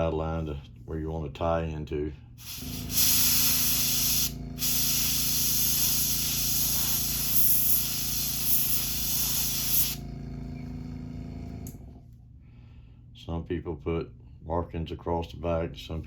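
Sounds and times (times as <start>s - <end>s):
airbrush spraying hiss: 2.4s - 10.0s
air compressor hum: 2.4s - 12.1s.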